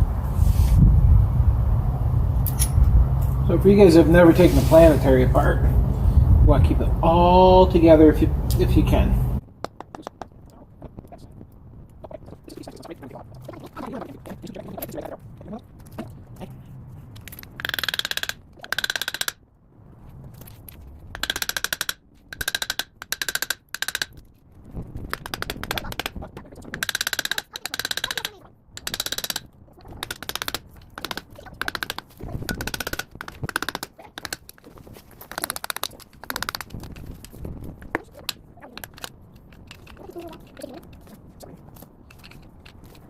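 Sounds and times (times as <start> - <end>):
impact wrench hammering: 17.6 - 19.4, 21.2 - 24.2, 26.8 - 34.6.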